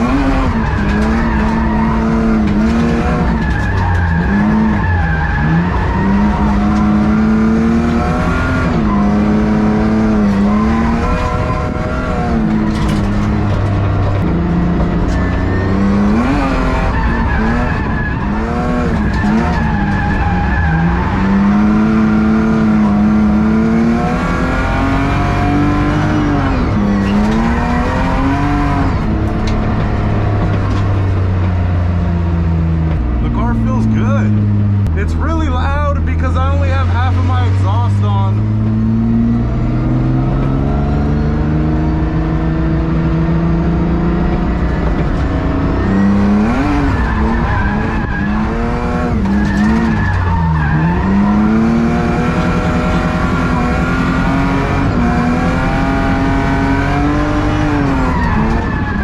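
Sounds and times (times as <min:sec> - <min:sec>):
loud car engine revving: 0:00.0 - 0:59.0
tyres skidding: 0:00.0 - 0:59.0.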